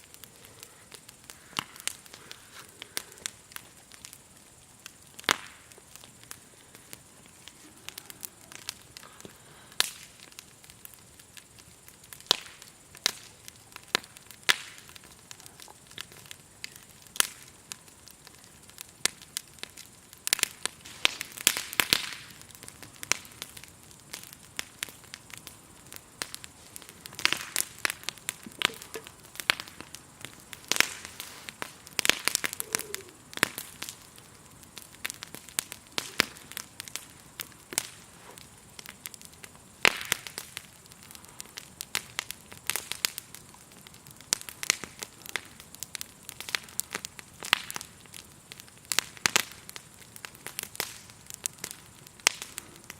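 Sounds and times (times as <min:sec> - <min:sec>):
campfire crackling and popping: 0:00.0 - 0:52.9
grasshoppers chirring: 0:22.6 - 0:45.6.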